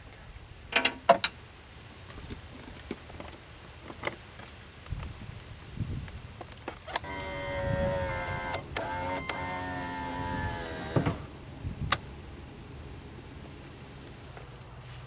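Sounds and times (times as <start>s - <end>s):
small electric motor whirring: 7.0s - 11.4s.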